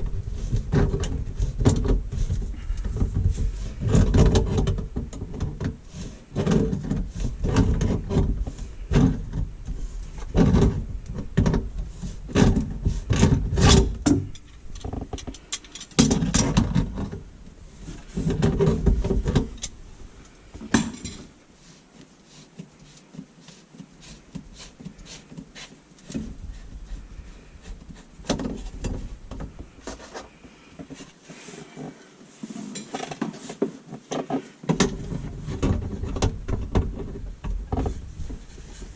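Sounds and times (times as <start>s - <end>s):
hand tools knocking and scraping: 0.0s - 21.4s, 22.0s - 38.9s.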